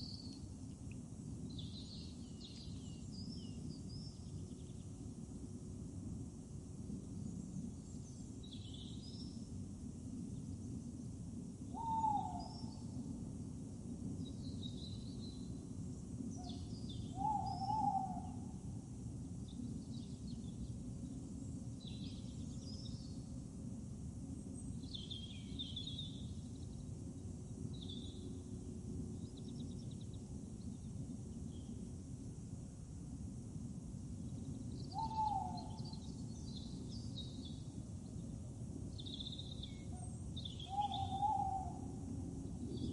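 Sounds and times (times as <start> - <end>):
lower falling bird calls: 16.4 - 18.4, 34.8 - 36.7, 39.0 - 42.9
steady low rumble: 41.8 - 42.9.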